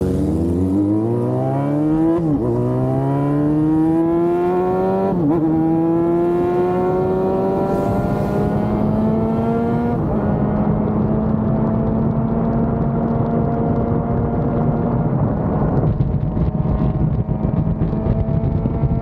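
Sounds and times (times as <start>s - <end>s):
motorcycle engine accelerating: 0.0s - 19.0s.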